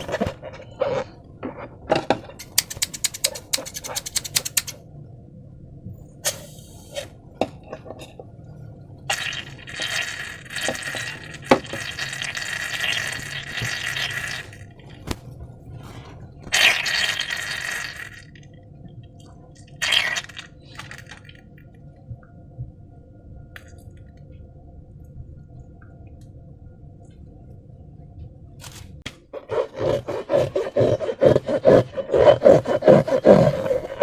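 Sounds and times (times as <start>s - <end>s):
sharp clicks: 2.4s - 4.8s.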